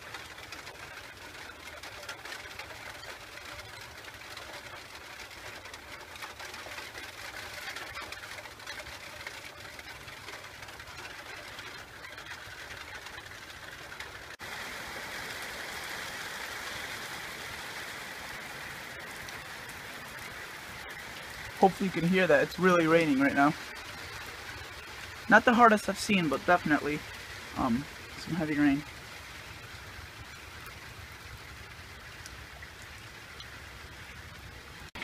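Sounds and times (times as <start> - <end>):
heavy rain pouring: 0.0 - 35.0.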